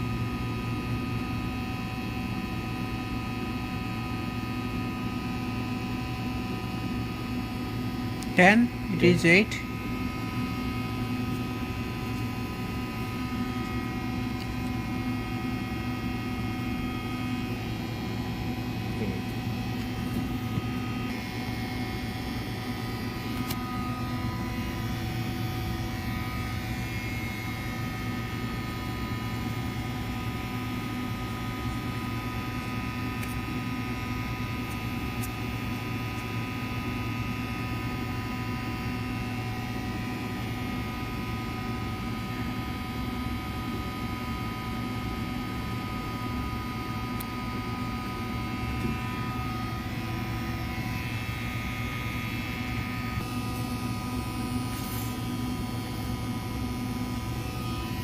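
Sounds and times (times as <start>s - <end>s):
machine hum: 0.0s - 58.0s.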